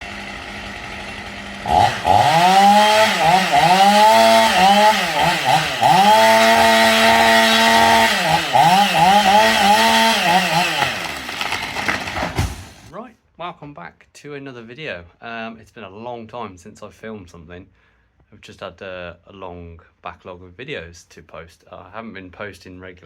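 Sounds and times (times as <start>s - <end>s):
small engine revving: 0.0s - 12.9s.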